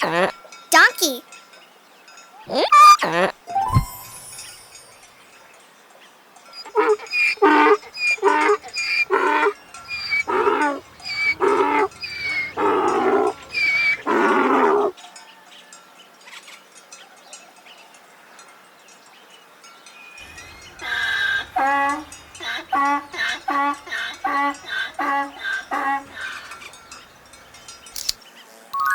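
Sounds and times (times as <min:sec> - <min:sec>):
donkey braying: 0:00.0 - 0:00.3, 0:02.5 - 0:03.4, 0:06.6 - 0:14.9, 0:20.3 - 0:27.9.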